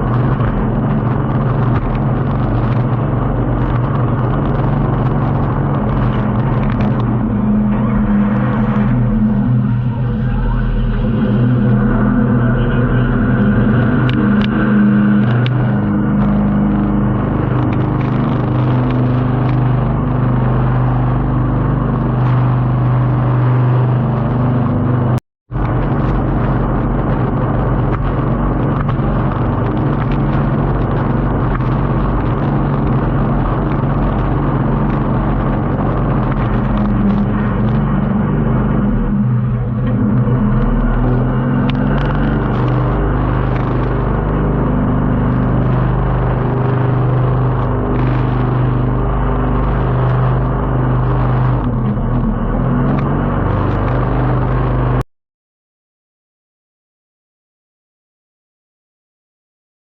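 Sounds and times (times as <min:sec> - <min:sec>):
boat engine droning: 0:00.0 - 0:55.0.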